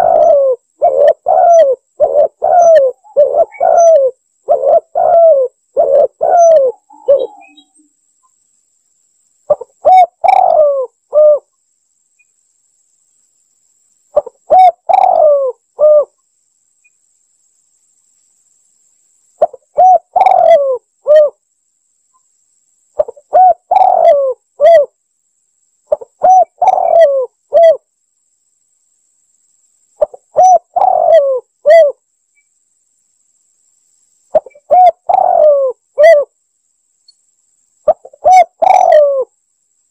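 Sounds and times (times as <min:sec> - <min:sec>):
dove cooing: 0:00.0 - 0:07.8, 0:09.5 - 0:11.5, 0:14.2 - 0:16.2, 0:19.4 - 0:21.4, 0:23.0 - 0:24.9, 0:25.9 - 0:27.8, 0:30.0 - 0:32.0, 0:34.3 - 0:36.3, 0:37.9 - 0:39.3.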